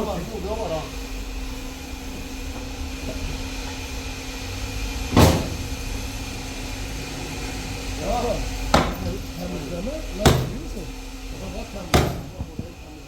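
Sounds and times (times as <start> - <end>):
low hum of machinery: 0.0 - 13.0
sharp knock: 5.2 - 5.8.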